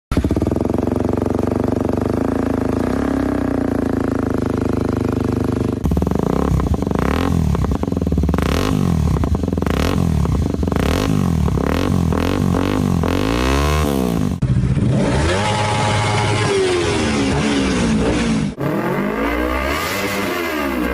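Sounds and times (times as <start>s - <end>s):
motorcycle engine revving: 0.1s - 20.9s
motorcycle engine running: 0.1s - 20.9s.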